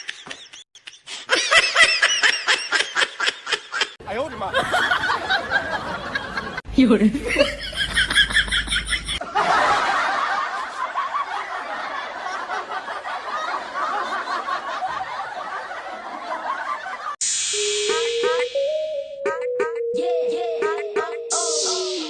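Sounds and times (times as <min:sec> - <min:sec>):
crowd laughing: 0:00.0 - 0:06.6, 0:07.2 - 0:17.2
music: 0:17.2 - 0:22.0.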